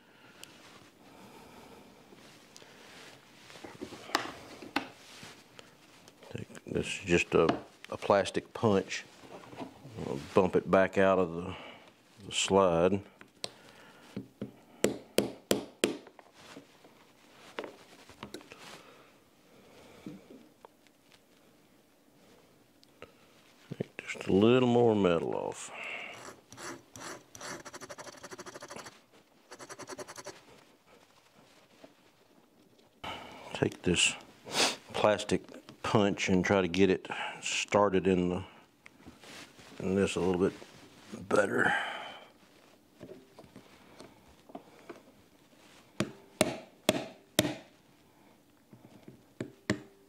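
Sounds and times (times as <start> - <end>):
file rasping on metal: 26.2 - 28.9, 29.5 - 30.4.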